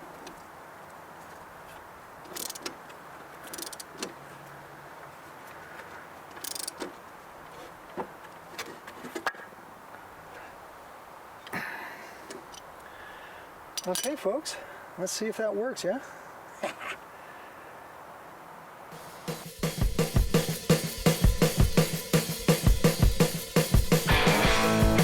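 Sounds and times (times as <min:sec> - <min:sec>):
low hiss: 0:09.5 - 0:25.0.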